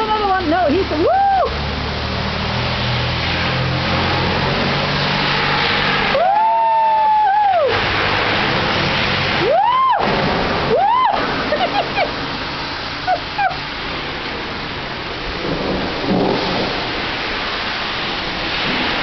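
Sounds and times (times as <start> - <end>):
rush of water spray: 0.0 - 19.0
person whooping: 1.0 - 1.5, 6.1 - 7.8, 9.4 - 10.0, 10.7 - 11.2.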